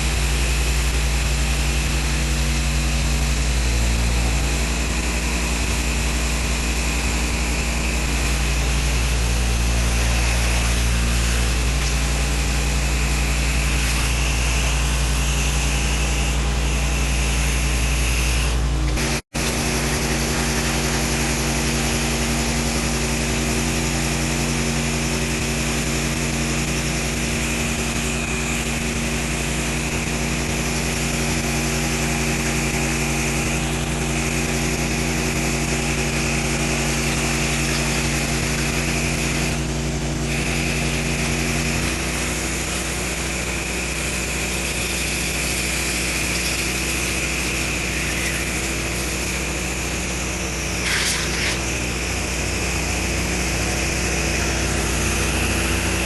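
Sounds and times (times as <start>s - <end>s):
pressure washer engine drone: 0.0s - 56.0s
water spraying hiss: 45.4s - 51.9s.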